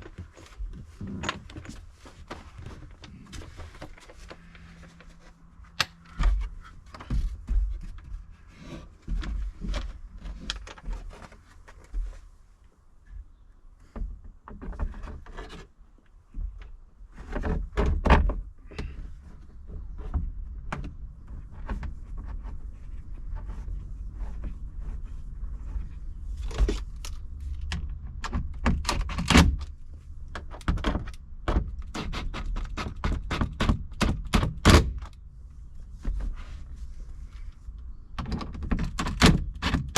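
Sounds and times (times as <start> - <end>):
knocks and clicks on plastic fittings: 30.3 - 35.1.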